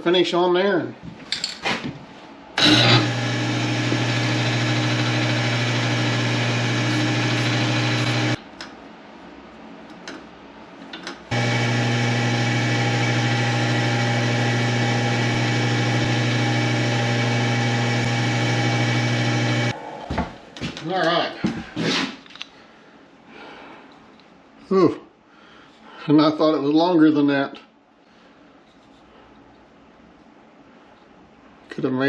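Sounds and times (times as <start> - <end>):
wood lathe motor hum: 2.6 - 8.4, 11.3 - 19.8.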